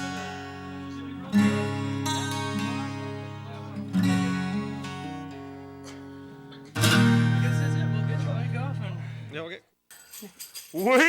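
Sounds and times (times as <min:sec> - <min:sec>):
acoustic guitar strumming chords: 0:00.0 - 0:09.4.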